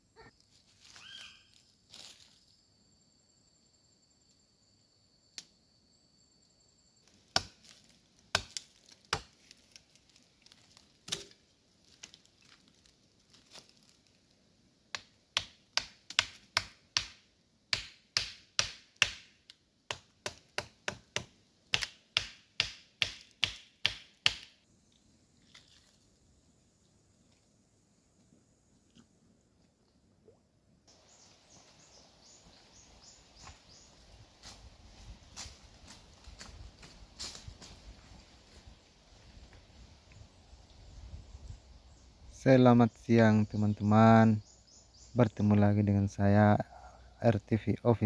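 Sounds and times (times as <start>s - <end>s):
chopping strikes on wood: 7.3s - 7.6s, 8.3s - 9.3s, 15.0s - 19.3s, 19.9s - 24.5s.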